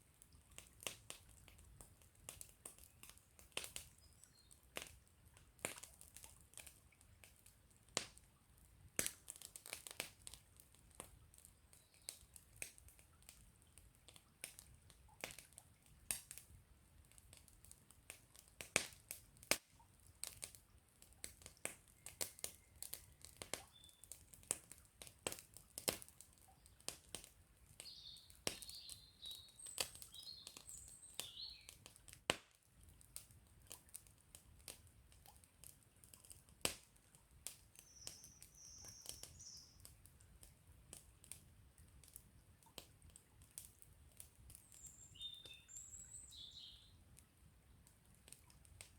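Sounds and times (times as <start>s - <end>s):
campfire crackling and popping: 0.2s - 46.4s, 47.1s - 48.9s
small bird chirping: 23.7s - 24.0s, 27.8s - 31.7s, 37.8s - 39.8s, 44.6s - 46.9s.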